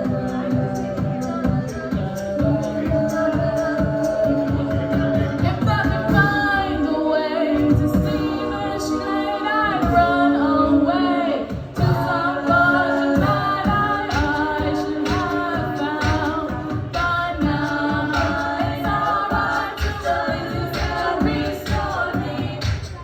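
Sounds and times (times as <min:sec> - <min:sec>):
a cappella group singing in harmony: 0:00.0 - 0:23.0.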